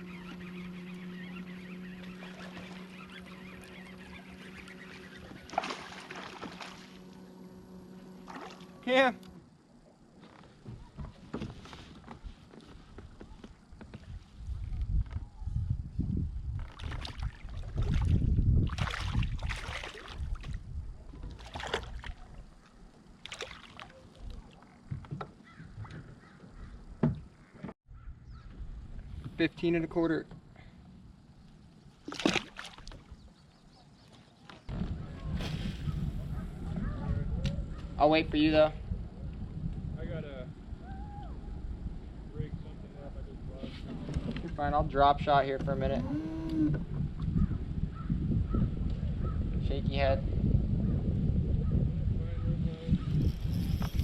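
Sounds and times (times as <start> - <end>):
birds calling: 0.0 - 9.3, 23.9 - 28.6, 32.9 - 34.8
steady low hum: 0.0 - 11.6
paddle strokes splashing water: 1.9 - 7.3, 8.0 - 9.2, 21.2 - 24.8, 31.9 - 33.2.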